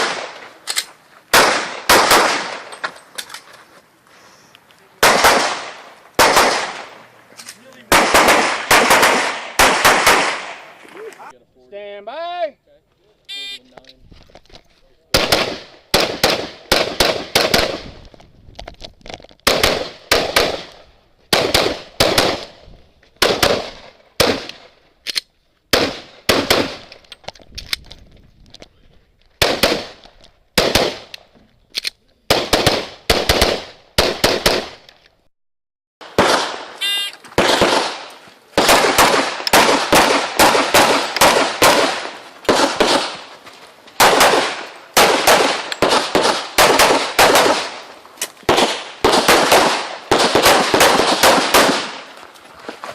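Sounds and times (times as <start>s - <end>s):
pistol shots: 0.0s - 0.5s, 1.3s - 2.7s, 5.0s - 7.0s, 7.9s - 10.8s, 15.1s - 17.9s, 19.4s - 22.6s, 23.2s - 24.7s, 25.7s - 26.9s, 29.4s - 31.2s, 32.3s - 34.9s, 36.0s - 43.3s, 44.0s - 52.1s.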